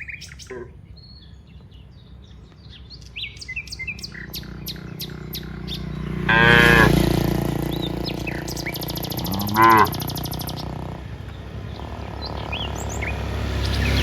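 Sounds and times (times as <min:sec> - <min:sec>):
birds chirping: 0:00.0 - 0:14.0
rapid high bird trill: 0:03.4 - 0:14.0
cow mooing: 0:04.3 - 0:07.4, 0:08.5 - 0:11.0, 0:11.7 - 0:13.2.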